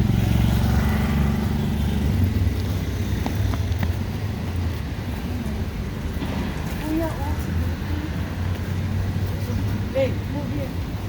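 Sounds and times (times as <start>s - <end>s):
vehicle engine running: 0.0s - 4.6s.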